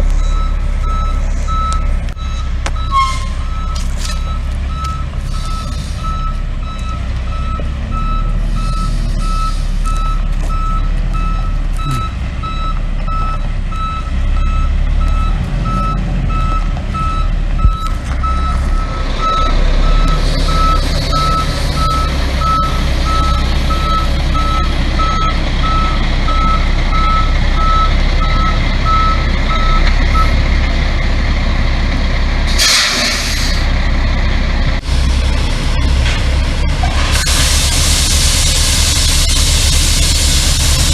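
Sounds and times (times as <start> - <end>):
diesel engine rumble: 0.0 - 40.9
truck reversing alarm beeps: 0.0 - 40.9
air brakes hiss: 32.5 - 33.7.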